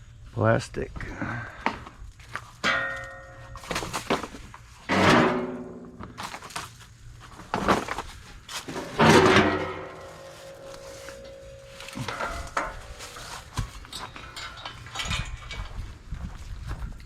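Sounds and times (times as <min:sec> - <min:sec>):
scrap metal clanking onto pile: 0:02.6 - 0:06.7, 0:07.5 - 0:15.8.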